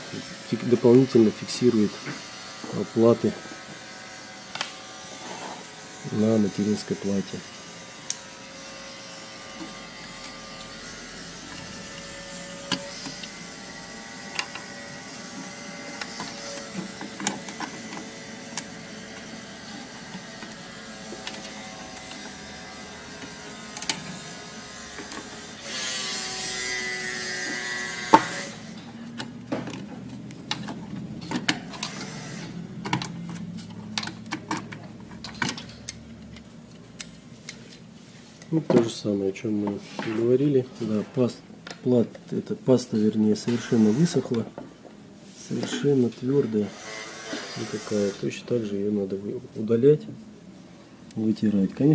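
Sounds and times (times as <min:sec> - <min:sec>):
computer parts clicking and knocking: 0:33.8 - 0:36.0.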